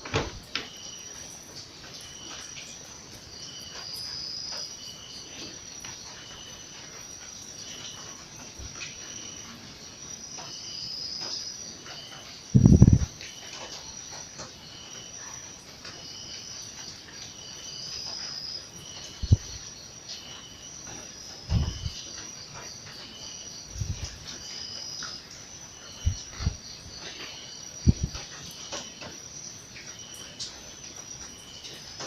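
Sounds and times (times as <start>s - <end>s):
insects chirping: 0.0s - 32.0s
dull low thumps: 12.6s - 13.1s.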